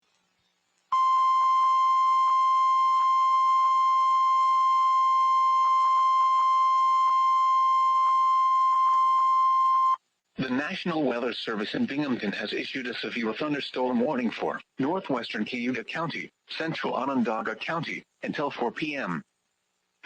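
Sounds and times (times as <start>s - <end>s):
steady warning alarm tone: 0.9s - 10.0s.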